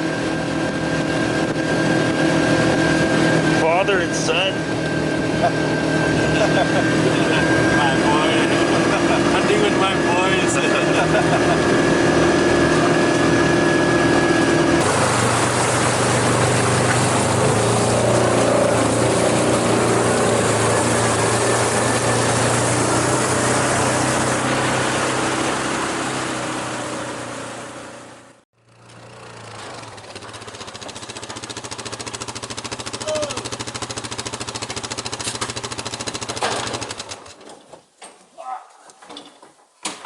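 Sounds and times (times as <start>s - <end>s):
off-road vehicle engine running: 0.0s - 37.4s.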